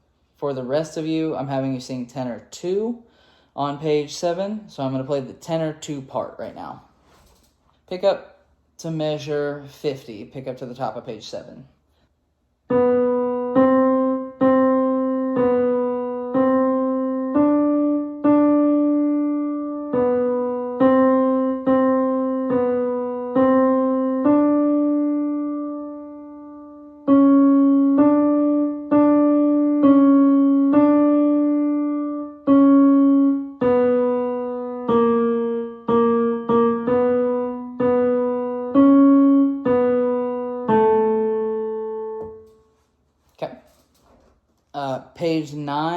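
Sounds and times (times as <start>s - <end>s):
piano melody single notes: 12.7s - 42.8s.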